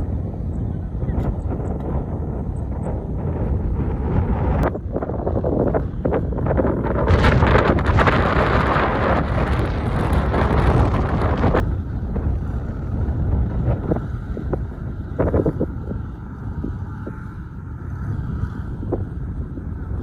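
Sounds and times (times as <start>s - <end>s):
wind buffeting microphone: 0.0s - 20.0s
loud rushing noise: 6.9s - 13.8s
heavy machinery engine: 6.9s - 17.9s.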